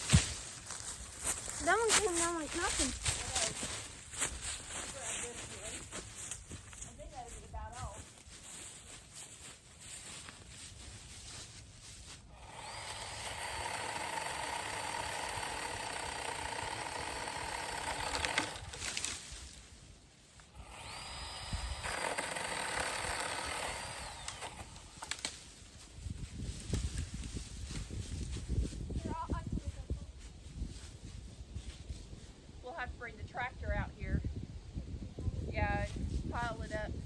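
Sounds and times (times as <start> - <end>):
chainsaw cutting branches: 0.0 - 6.0, 12.3 - 19.6, 20.4 - 25.7.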